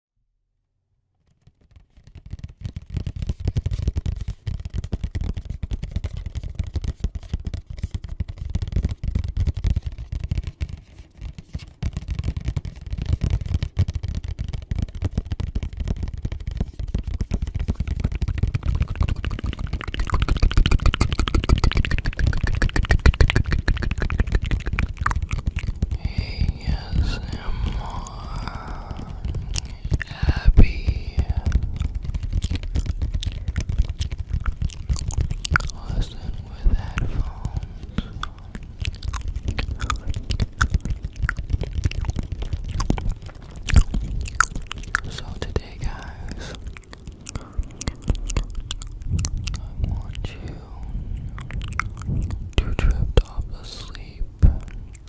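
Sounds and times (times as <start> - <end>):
crackling and scratching: 1.3 - 55.0
low rumble: 23.7 - 54.9.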